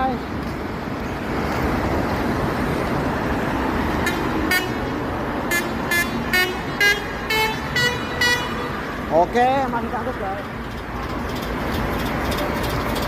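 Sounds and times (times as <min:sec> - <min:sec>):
truck horn toots of differing pitch: 0:04.0 - 0:04.9, 0:05.5 - 0:08.9.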